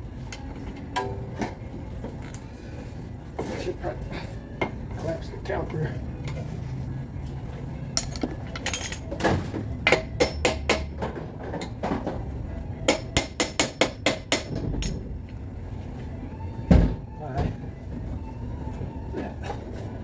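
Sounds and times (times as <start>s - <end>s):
hammer striking metal: 9.9s - 11.0s, 12.9s - 14.9s.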